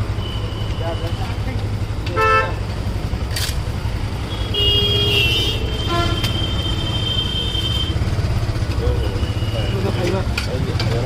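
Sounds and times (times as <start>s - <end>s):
vehicle horns: 2.1s - 2.7s, 4.2s - 8.2s.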